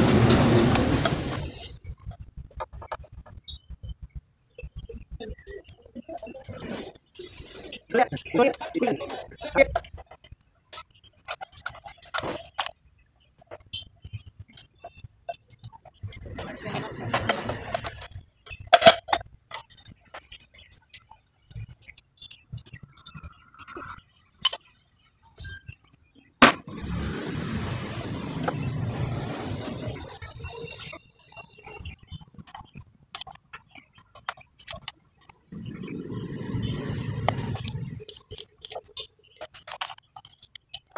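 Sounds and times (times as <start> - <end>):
metal tools clinking: 14.4 - 20.6.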